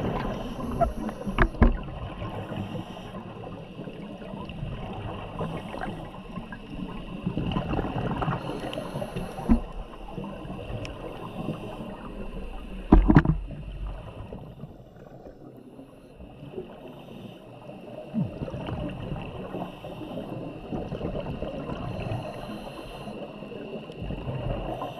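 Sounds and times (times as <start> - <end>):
faint clicks in water: 0.0 - 1.9, 7.4 - 9.8, 10.7 - 11.0
exhaled bubbles gurgling underwater: 0.0 - 24.9.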